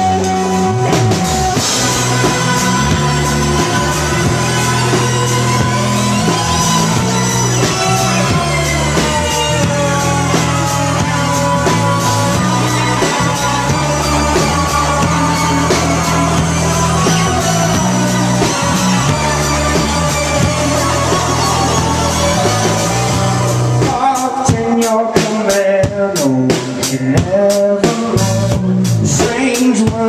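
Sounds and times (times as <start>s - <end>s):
sustained electric guitar notes: 0.0s - 24.0s
rock band playing live: 0.0s - 30.0s.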